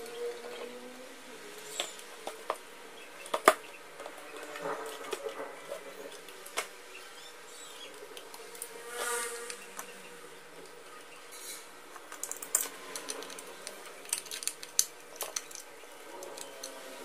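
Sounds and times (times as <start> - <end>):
hands fitting iron parts: 10.6 - 17.0.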